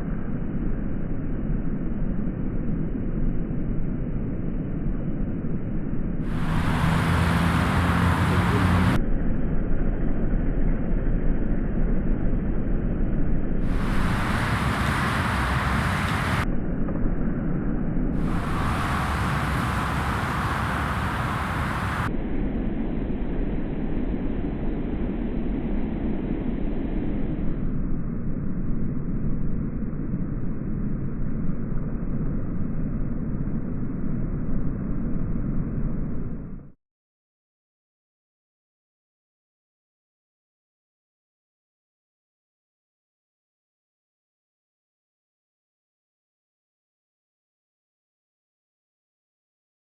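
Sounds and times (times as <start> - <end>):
rain hiss: 6.3 - 9.0, 13.7 - 16.4, 18.2 - 22.1
thunderstorm rumbling: 6.3 - 9.0, 13.7 - 16.4, 18.2 - 22.1.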